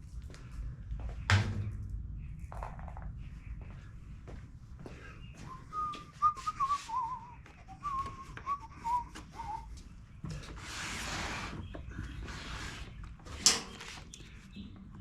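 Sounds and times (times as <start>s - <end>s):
person whistling a tune: 5.5s - 9.7s.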